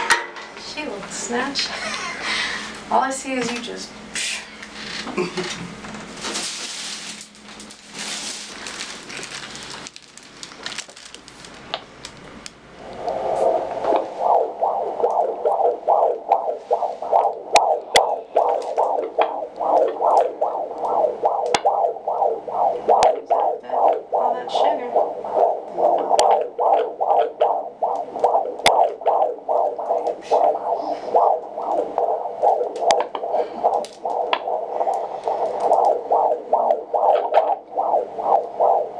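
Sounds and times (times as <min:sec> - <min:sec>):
doppler monitor static: 0:04.8 - 0:38.9
fetal heartbeat whooshing pulses: 0:12.8 - 0:38.9.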